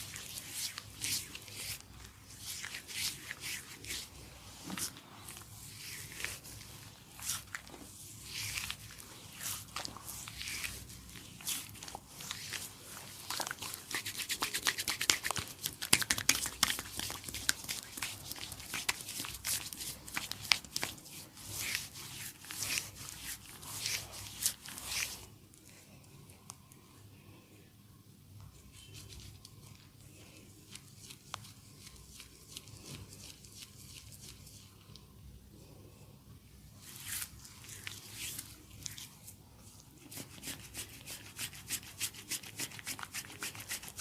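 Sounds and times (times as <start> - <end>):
rubbing on facial skin: 0.0 - 25.3, 40.0 - 44.0.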